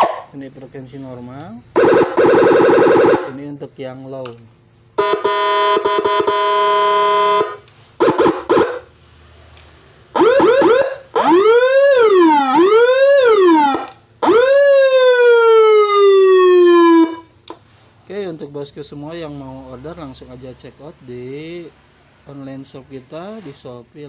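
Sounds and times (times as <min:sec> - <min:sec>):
electronic siren tones: 0:01.8 - 0:03.4, 0:05.0 - 0:08.9, 0:10.2 - 0:17.3.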